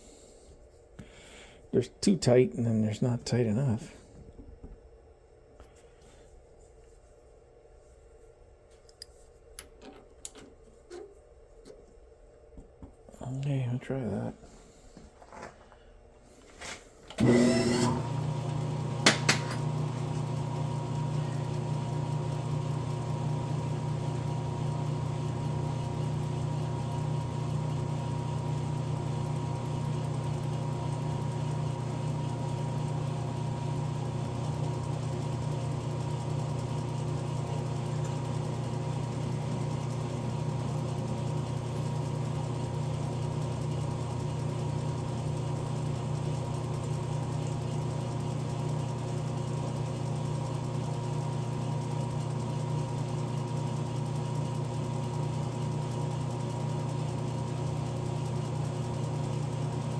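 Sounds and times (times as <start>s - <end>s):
metal lathe humming: 17.2s - 59.9s.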